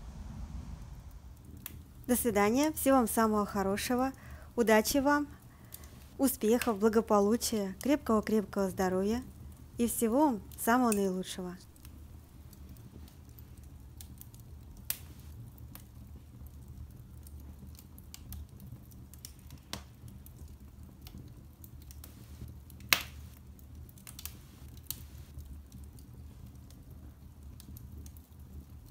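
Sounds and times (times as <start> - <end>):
low steady hum: 0.0 - 12.5.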